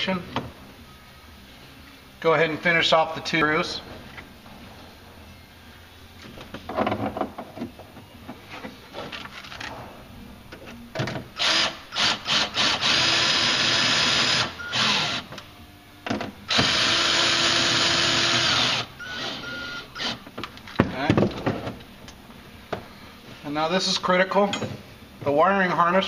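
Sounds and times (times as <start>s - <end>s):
power drill driving screws: 11.4s - 15.3s, 16.5s - 20.2s.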